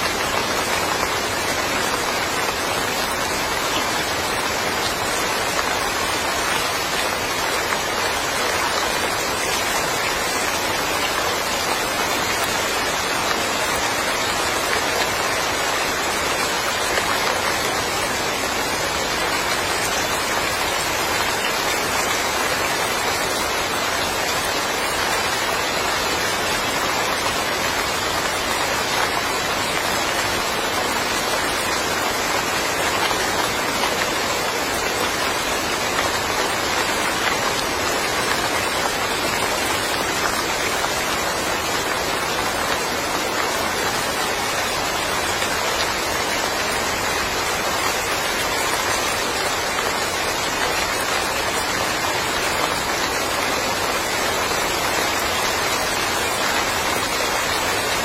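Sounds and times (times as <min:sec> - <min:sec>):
rain pattering: 0:00.0 - 0:58.0.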